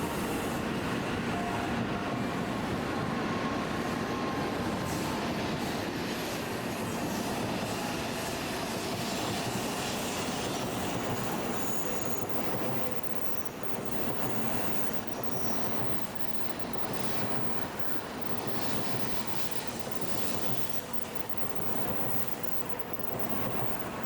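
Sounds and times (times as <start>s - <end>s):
train rumbling: 0.0s - 24.0s.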